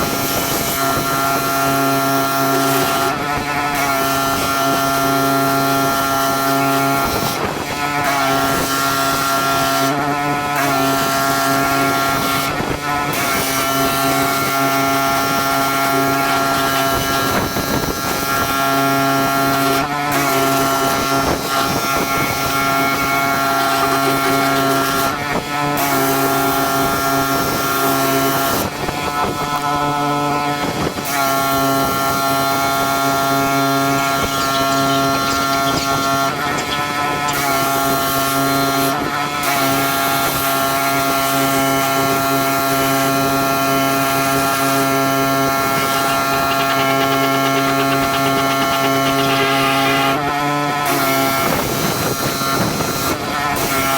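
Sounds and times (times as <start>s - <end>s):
pressure washer engine running: 0.0s - 53.9s
water jet hissing: 31.2s - 50.3s.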